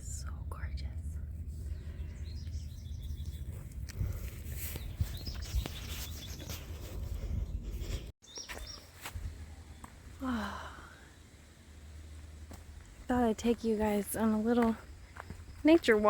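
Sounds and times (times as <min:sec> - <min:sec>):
low rumble on microphone: 0:00.0 - 0:08.1
small birds chirping: 0:01.6 - 0:16.0.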